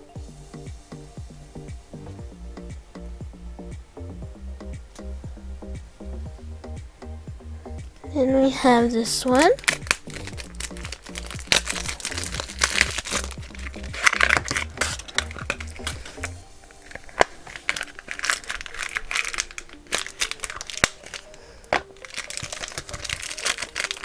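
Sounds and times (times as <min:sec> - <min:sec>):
background music with low notes: 0:00.0 - 0:24.0
plastic packaging crinkling: 0:08.1 - 0:24.0.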